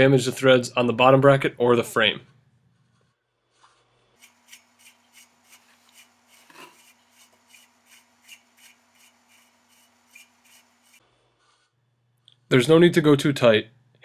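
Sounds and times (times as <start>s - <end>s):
faint threaded metal scraping: 2.7s - 11.0s.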